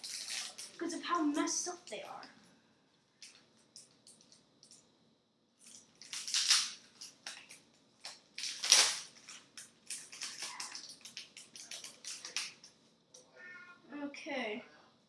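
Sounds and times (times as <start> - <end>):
cards and packaging rustling: 0.0 - 2.3, 5.6 - 12.7.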